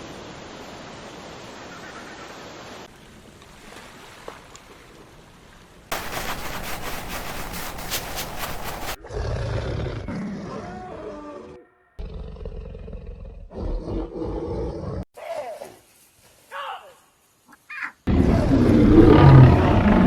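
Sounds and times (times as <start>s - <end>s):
loud rough hissing: 5.9s - 9.0s
animal deep roar: 9.0s - 15.0s, 18.1s - 20.0s.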